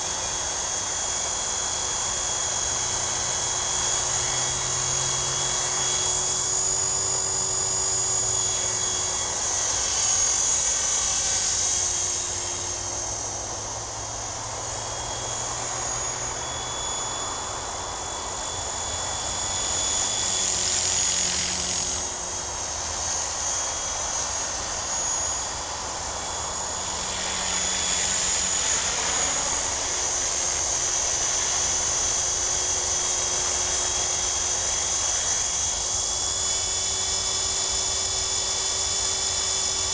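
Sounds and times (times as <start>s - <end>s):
model helicopter motor whine: 0.0s - 39.9s
rotor hum: 0.0s - 39.9s.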